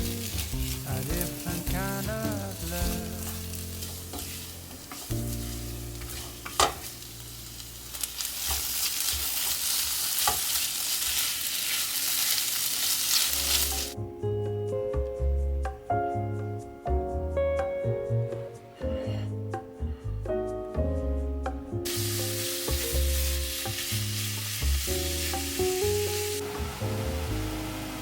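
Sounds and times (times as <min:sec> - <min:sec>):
background music: 0:00.0 - 0:07.4, 0:13.3 - 0:28.0
food sizzling in a pan: 0:00.0 - 0:14.0, 0:21.9 - 0:28.0.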